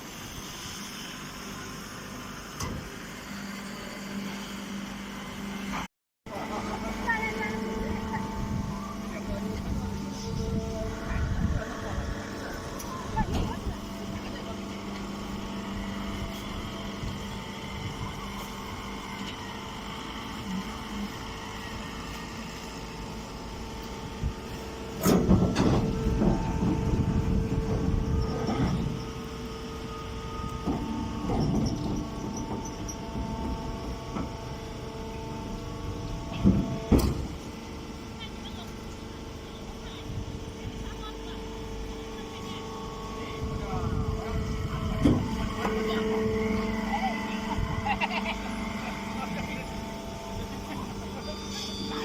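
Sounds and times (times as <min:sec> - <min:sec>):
baler machine humming: 0:00.0 - 0:52.0
noisy clatter: 0:24.9 - 0:29.1.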